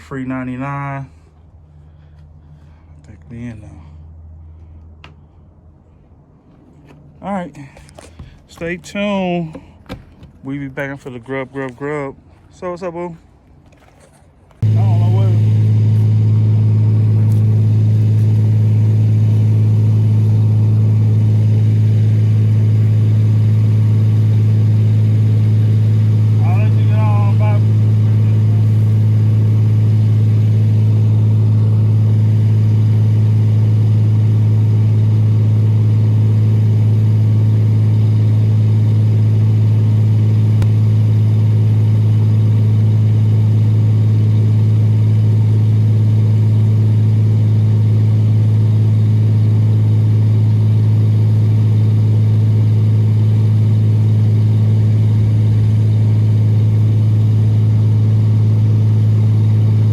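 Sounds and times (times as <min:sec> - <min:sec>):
excavator engine humming: 0:13.3 - 0:59.9.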